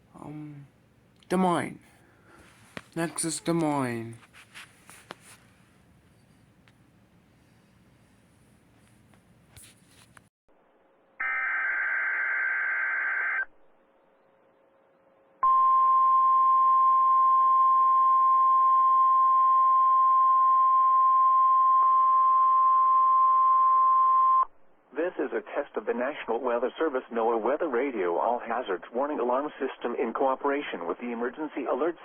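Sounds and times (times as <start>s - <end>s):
steady loud alarm tone: 11.2s - 13.4s.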